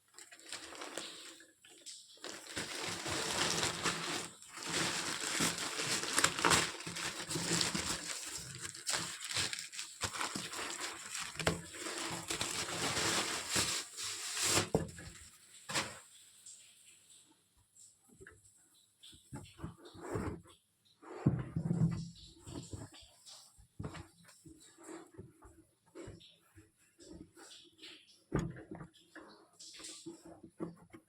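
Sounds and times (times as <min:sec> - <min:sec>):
packaging rustling and crinkling: 0:00.0 - 0:16.5.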